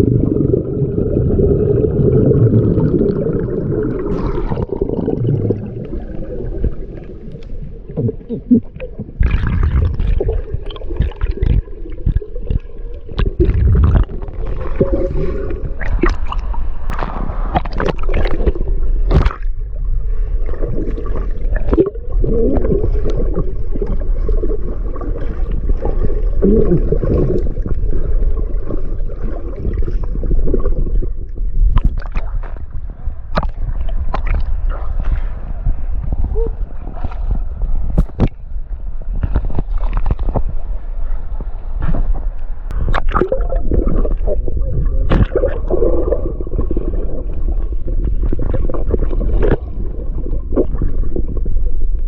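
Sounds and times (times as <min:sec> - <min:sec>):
gurgling bubbles: 0:00.0 - 0:38.4, 0:42.7 - 0:52.0
muffled underwater rumble: 0:00.0 - 0:52.0
knocks and clicks underwater: 0:03.9 - 0:19.8, 0:20.5 - 0:35.2, 0:35.9 - 0:40.7, 0:41.8 - 0:52.0.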